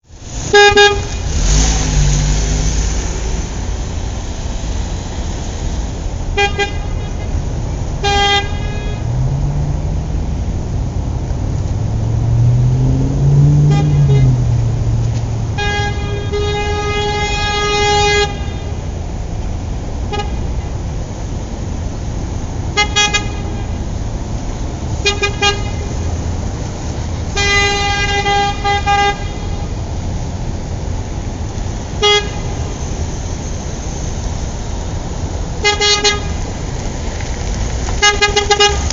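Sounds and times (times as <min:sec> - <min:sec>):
car horn honking: 0:00.4 - 0:01.6, 0:06.3 - 0:07.4, 0:08.0 - 0:09.2, 0:13.6 - 0:14.7, 0:15.4 - 0:18.8, 0:20.1 - 0:20.6, 0:22.7 - 0:23.8, 0:25.0 - 0:26.0, 0:27.3 - 0:29.8, 0:32.0 - 0:32.8, 0:35.6 - 0:36.4, 0:38.0 - 0:38.9.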